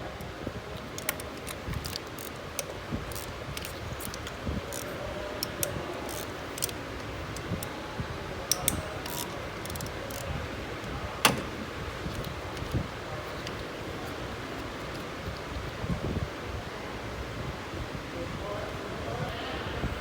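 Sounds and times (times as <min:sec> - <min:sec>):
steady background hum: 0:00.0 - 0:20.0
metallic clicks of tools: 0:00.2 - 0:07.7, 0:08.5 - 0:12.8.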